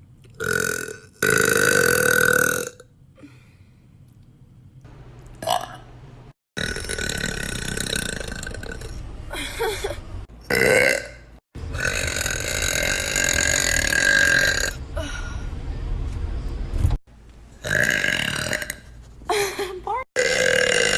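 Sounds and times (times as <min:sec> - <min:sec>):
girl burping: 0:19.6 - 0:20.9.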